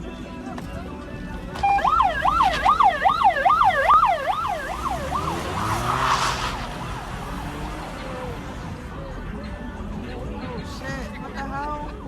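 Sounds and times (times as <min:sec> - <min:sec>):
siren fast yelp: 0:01.6 - 0:06.3.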